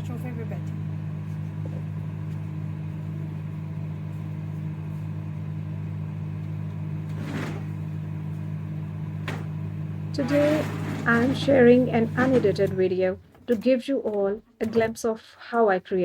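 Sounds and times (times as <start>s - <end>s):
steady low hum: 0.0s - 13.2s.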